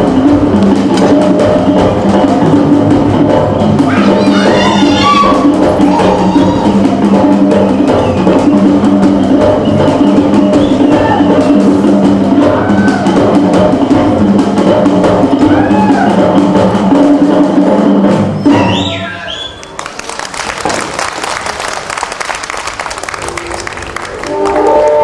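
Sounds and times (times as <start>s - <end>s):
fast dense drumming: 0.0s - 18.9s
pitched music parts: 0.0s - 19.9s.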